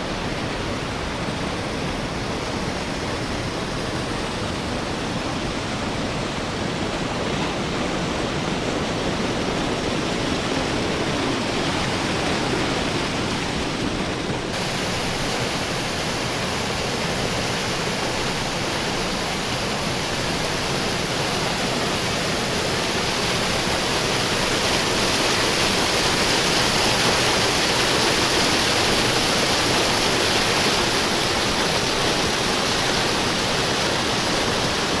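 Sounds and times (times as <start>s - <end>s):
water rushing through sluice: 0.0s - 35.0s.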